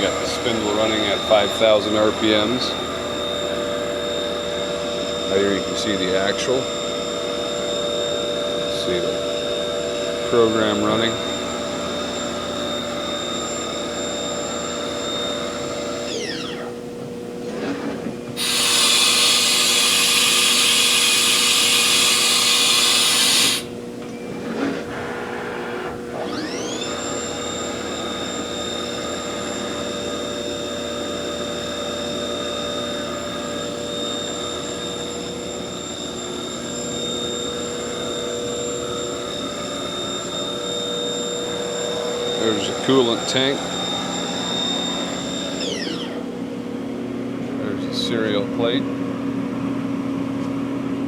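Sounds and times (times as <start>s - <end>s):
machine spindle whine: 0.0s - 51.0s
loud hiss: 18.4s - 23.7s.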